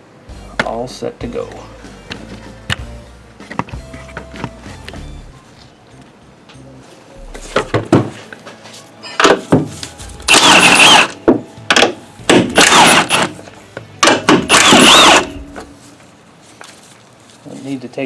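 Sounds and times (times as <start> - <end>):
impact wrench whining: 10.0 - 15.8.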